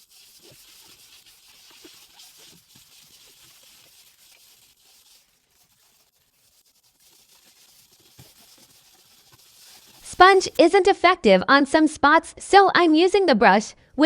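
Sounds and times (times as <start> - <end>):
applicator scrubbing plastic: 0.0 - 10.7.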